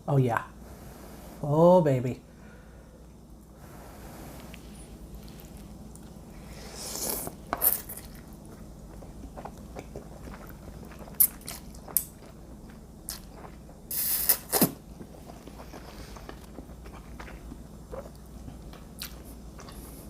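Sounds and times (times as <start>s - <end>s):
chewing food: 4.4s - 6.4s, 7.0s - 20.0s.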